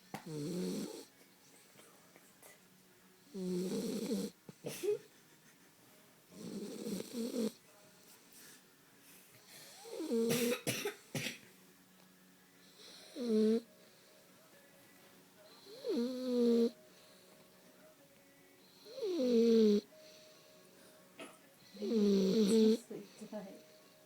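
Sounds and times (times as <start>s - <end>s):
dog snoring: 0.2s - 1.1s, 3.2s - 4.6s, 6.3s - 7.7s, 9.4s - 10.4s, 12.6s - 14.0s, 15.5s - 17.3s, 18.6s - 20.4s, 21.6s - 24.0s.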